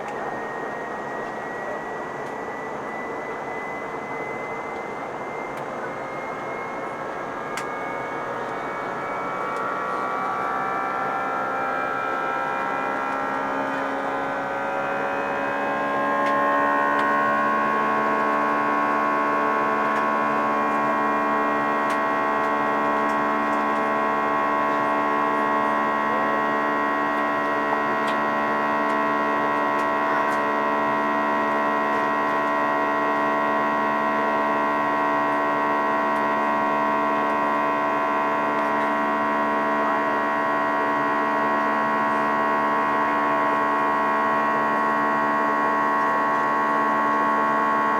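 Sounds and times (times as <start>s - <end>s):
jet engines spooling up: 0.0s - 32.7s.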